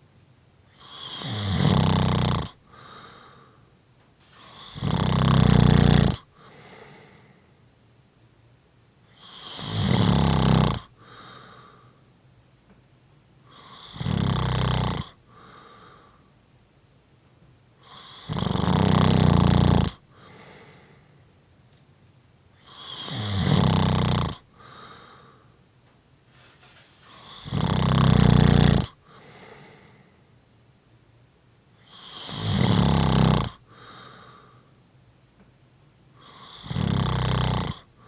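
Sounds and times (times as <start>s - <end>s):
person snoring: 0.8s - 3.5s, 4.3s - 7.4s, 9.1s - 11.8s, 13.5s - 16.1s, 17.8s - 21.0s, 22.6s - 25.4s, 27.0s - 30.1s, 31.8s - 34.6s, 36.2s - 37.9s
soft breath sound: 2.6s - 4.8s, 5.8s - 7.8s, 10.9s - 12.2s, 15.2s - 16.5s, 20.0s - 21.4s, 24.4s - 25.6s, 26.2s - 27.5s, 28.4s - 30.4s, 33.6s - 34.8s.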